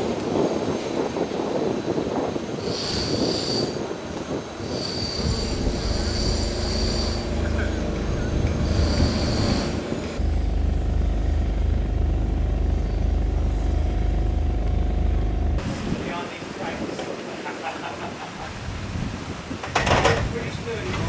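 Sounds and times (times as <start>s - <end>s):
high-pitched metallic squealing: 4.6s - 10.2s
low engine rumble: 5.3s - 16.2s.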